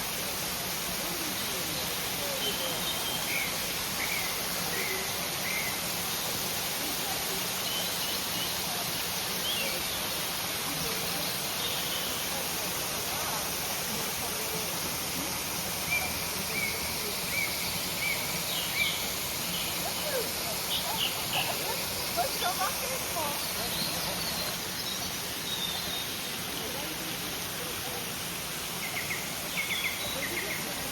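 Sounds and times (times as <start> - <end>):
waterfall rushing: 0.0 - 30.9
small birds chirping: 15.8 - 26.9, 28.7 - 30.9.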